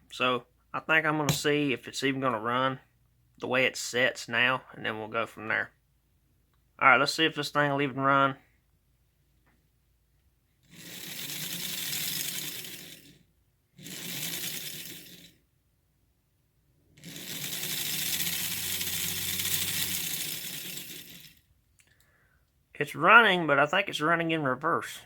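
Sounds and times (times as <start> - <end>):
toy locomotive motor whirring: 10.6 - 15.4, 17.0 - 21.5.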